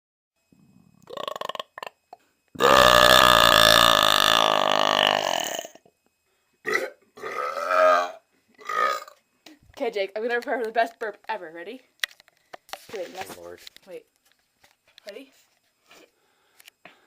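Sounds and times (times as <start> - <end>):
person belching: 1.0 - 2.0, 2.6 - 5.8, 6.6 - 9.2.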